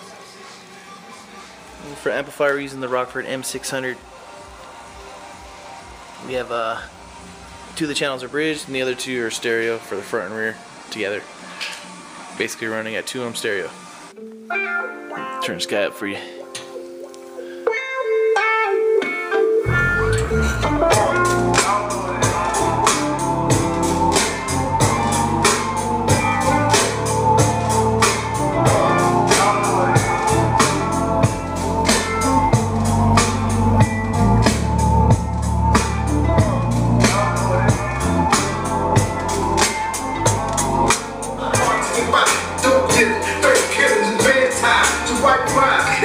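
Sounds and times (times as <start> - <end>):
loud music with drums and bass: 19.7 - 46.0.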